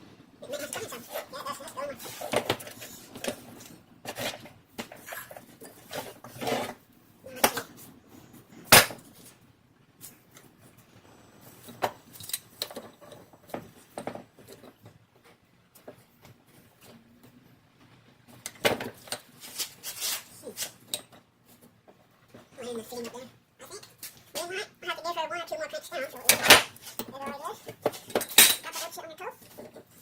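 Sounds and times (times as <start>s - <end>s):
metal hand tools clinking: 27.9s - 29.0s.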